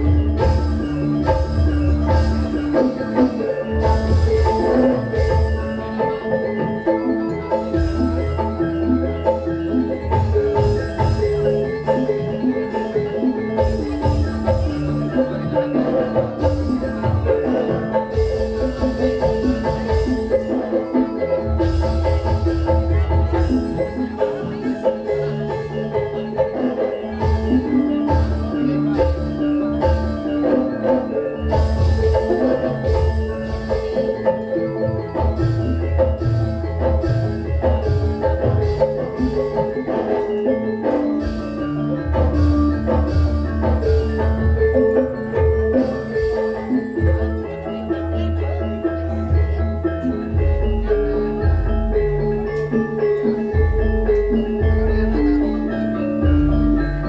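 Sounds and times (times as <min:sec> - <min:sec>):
deep drum beats: 0:00.0 - 0:26.4, 0:49.2 - 0:57.0
metallophones ringing pattern: 0:00.0 - 0:57.0
tuned metal percussion melody: 0:00.0 - 0:57.0.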